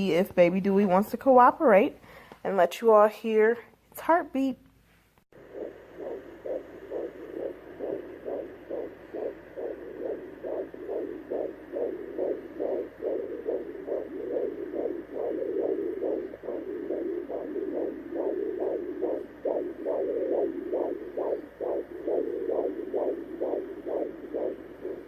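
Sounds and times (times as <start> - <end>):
fetal heartbeat through doppler speaker: 5.3 - 25.0.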